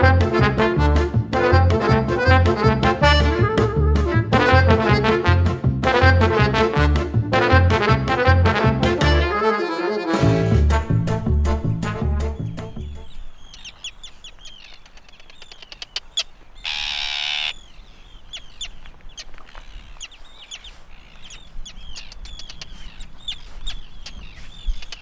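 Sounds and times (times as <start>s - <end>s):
birds crying: 11.2s - 25.0s.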